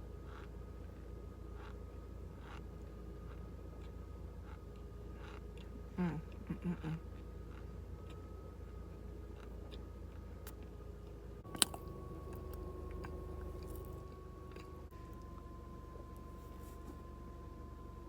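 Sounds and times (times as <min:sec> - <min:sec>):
low steady hum: 0:00.0 - 0:18.0
mouth chewing crunchy food: 0:01.6 - 0:08.3, 0:09.2 - 0:10.7, 0:11.4 - 0:15.4.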